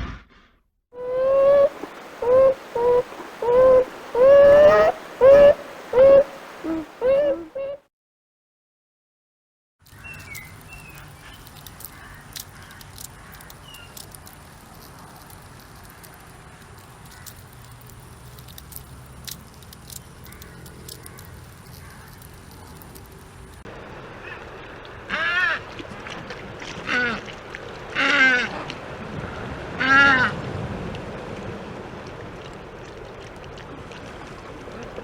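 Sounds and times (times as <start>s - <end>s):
sharp clicks: 9.9s - 23.6s.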